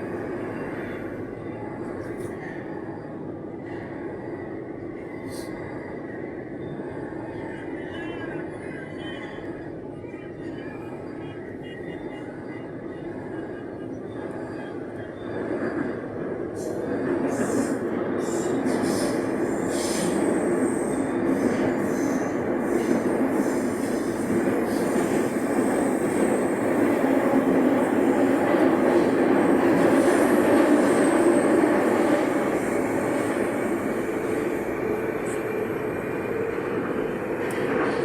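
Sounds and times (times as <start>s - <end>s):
train wheels on rail: 11.8s - 38.0s.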